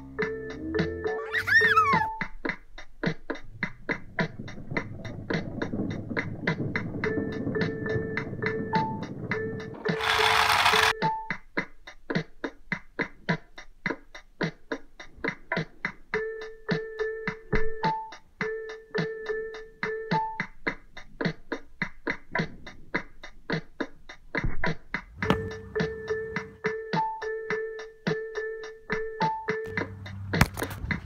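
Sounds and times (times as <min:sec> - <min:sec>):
repeated keyboard notes: 0:25.2 - 0:30.2.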